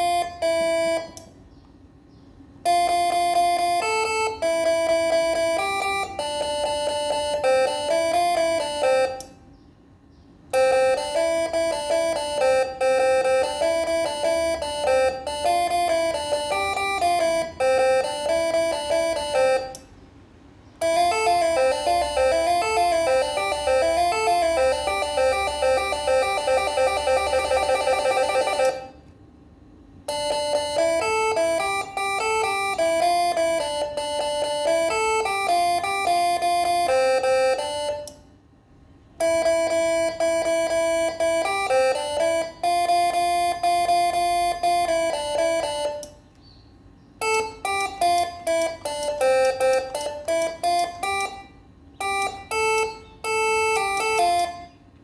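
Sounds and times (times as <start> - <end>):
musical horn playing a tune: 0.0 - 1.2, 10.6 - 19.8, 20.8 - 28.9, 30.1 - 38.1.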